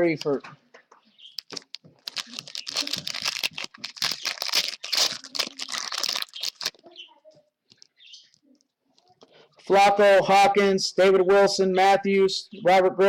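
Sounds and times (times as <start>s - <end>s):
foil wrapper tearing and crinkling: 1.3s - 6.8s.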